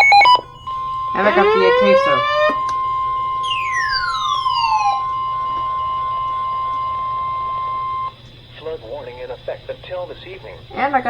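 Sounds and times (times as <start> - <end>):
falling whistle-like glide: 0.0 - 8.2
steady electronic alarm tone: 0.0 - 11.0.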